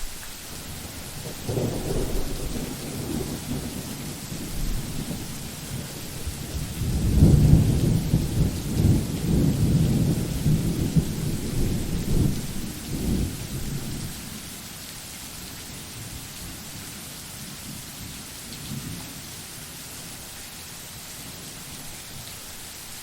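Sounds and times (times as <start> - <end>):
thunder rumbling: 0.0 - 14.2
steady rain: 0.0 - 23.0.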